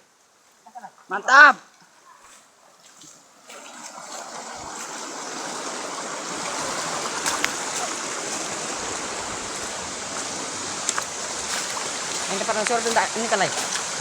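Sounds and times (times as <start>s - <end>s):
waterfall rushing water: 3.5s - 14.0s.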